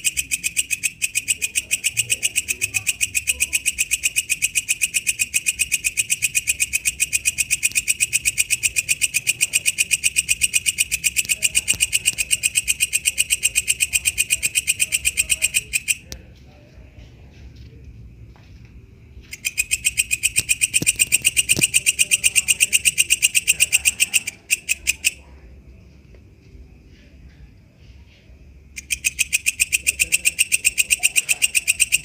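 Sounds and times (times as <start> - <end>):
katydid chirping: 0.0 - 16.2, 19.2 - 25.3, 28.7 - 32.0.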